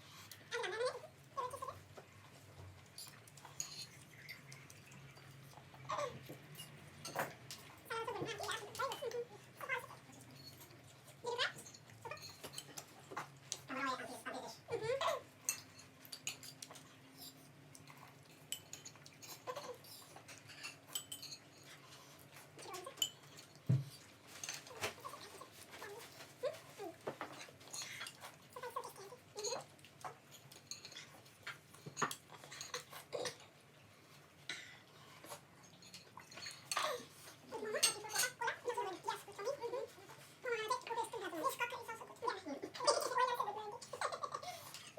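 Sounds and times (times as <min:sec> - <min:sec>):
chewing and lip-smacking: 0:00.1 - 0:13.7, 0:15.4 - 0:26.8
cutlery clinking on plates: 0:02.9 - 0:04.5, 0:06.3 - 0:07.7, 0:11.6 - 0:13.4, 0:15.4 - 0:17.4, 0:18.4 - 0:21.8, 0:22.9 - 0:25.2, 0:29.4 - 0:33.4, 0:35.3 - 0:37.0
cutlery clicking on dishes: 0:18.4 - 0:21.7.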